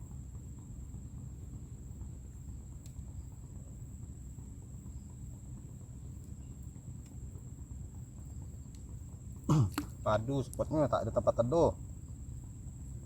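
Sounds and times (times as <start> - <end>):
high-pitched insect trill: 0.0 - 13.0
faint clicks: 2.8 - 3.0, 7.0 - 7.2, 8.6 - 8.9.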